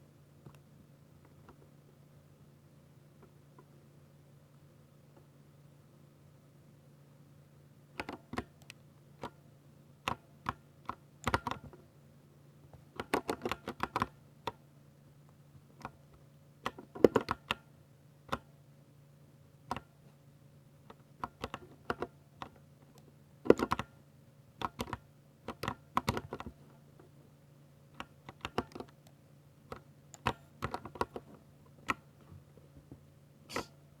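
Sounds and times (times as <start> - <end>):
mechanical keyboard typing: 11.2 - 11.7, 13.0 - 14.2, 23.5 - 23.9, 24.6 - 26.5, 28.0 - 29.0, 29.7 - 31.2.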